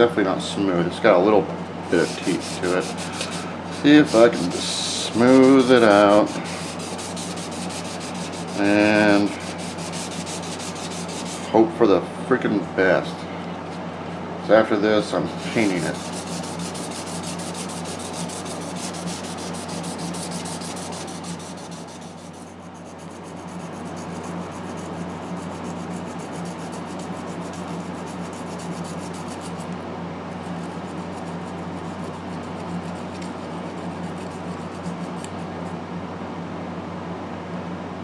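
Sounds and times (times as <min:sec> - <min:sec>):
steady low hum: 0:00.0 - 0:36.6
sandpaper rubbing on plastic: 0:01.8 - 0:11.5, 0:15.3 - 0:29.8, 0:30.4 - 0:35.6.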